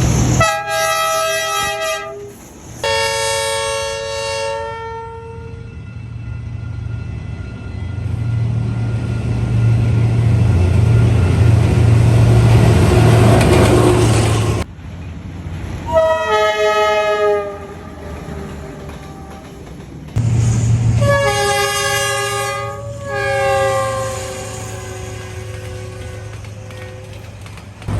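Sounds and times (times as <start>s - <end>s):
diesel locomotive approaching: 0.0s - 27.9s
locomotive horn chord: 0.4s - 5.8s, 15.9s - 19.4s, 21.0s - 27.2s.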